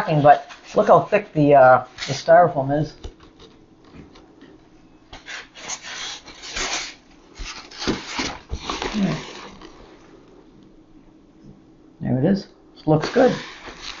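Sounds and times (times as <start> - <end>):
styrofoam squeaking and scraping: 5.2 - 9.8, 13.1 - 14.0.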